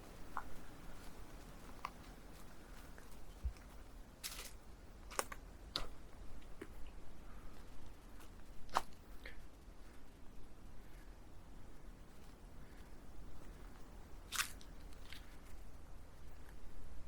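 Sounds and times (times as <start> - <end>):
camera handling clicks and crunches: 14.3 - 15.3.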